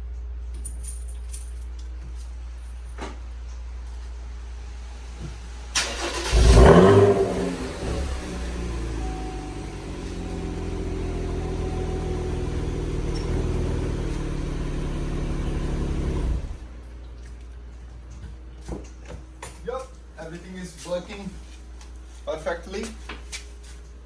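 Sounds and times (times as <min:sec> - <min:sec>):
car engine idling: 0:05.8 - 0:16.7.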